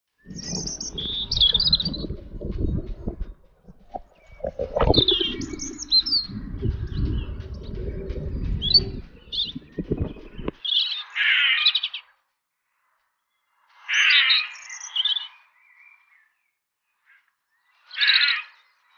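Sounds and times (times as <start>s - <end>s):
small birds chirping: 0.1s - 12.2s, 12.8s - 18.9s
low rumbling noise: 0.2s - 10.6s.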